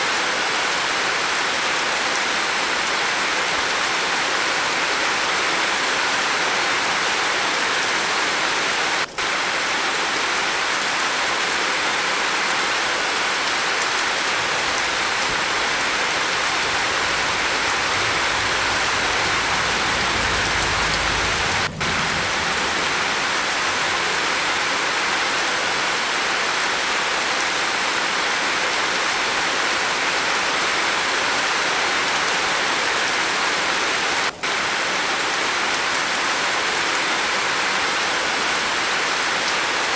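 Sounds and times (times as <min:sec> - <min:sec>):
rain falling on a roof: 0:00.0 - 0:39.9
faint low rumble: 0:14.4 - 0:24.4.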